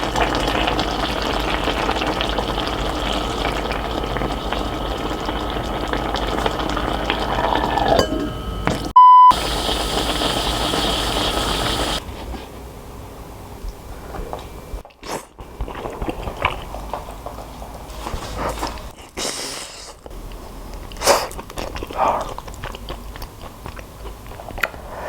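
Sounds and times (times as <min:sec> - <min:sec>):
pot of liquid boiling: 0:00.0 - 0:12.0
short high electronic beep: 0:07.6 - 0:09.4.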